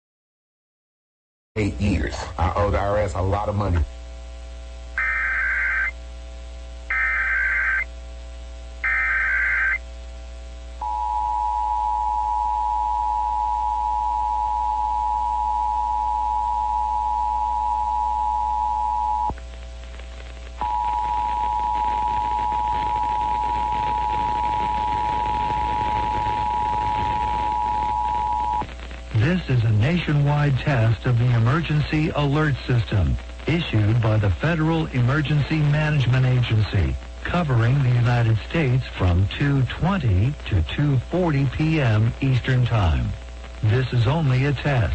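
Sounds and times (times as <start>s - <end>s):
raspy digital data bursts: 5.0s - 6.0s, 6.9s - 7.9s, 8.8s - 9.8s, 20.6s - 32.0s
harsh two-tone attention signal: 8.8s - 9.8s, 20.6s - 28.6s.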